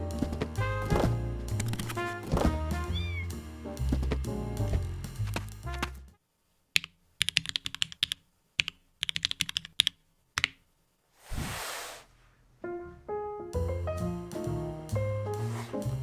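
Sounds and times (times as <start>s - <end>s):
mechanical keyboard typing: 6.8s - 10.6s
short hiss: 11.2s - 12.2s, 15.3s - 16.0s.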